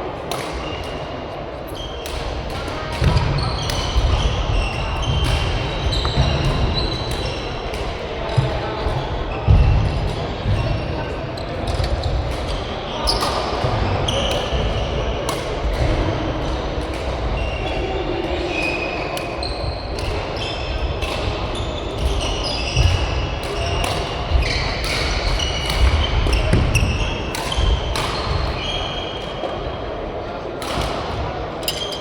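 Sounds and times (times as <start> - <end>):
shoes squeaking on court floor: 3.0 - 14.9, 18.5 - 29.6, 31.6 - 32.0
rackets hitting shuttlecock: 22.0 - 28.8, 30.6 - 32.0.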